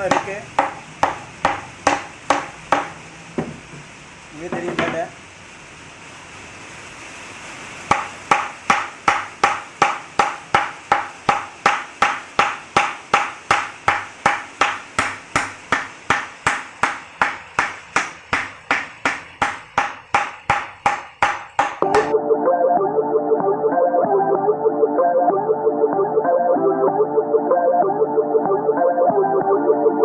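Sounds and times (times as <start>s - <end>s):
cricket bat knocking: 0.0s - 3.6s, 7.9s - 22.1s.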